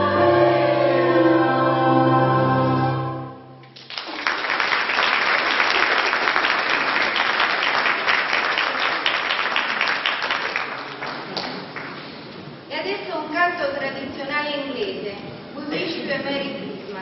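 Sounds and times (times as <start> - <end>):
choir singing final chord: 0.0 - 3.6
audience applauding: 3.7 - 12.1.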